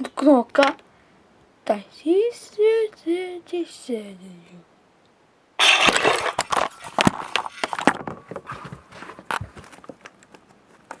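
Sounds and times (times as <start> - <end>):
plastic toys clattering: 5.6 - 10.4.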